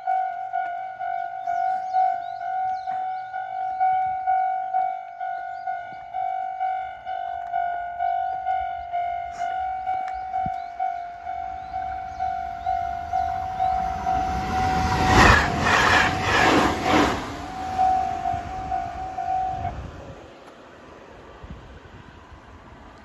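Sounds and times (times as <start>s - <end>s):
level-crossing warning bell: 0.0s - 20.3s
train passing with rush: 0.0s - 23.0s
train wheel clacks: 10.0s - 19.7s.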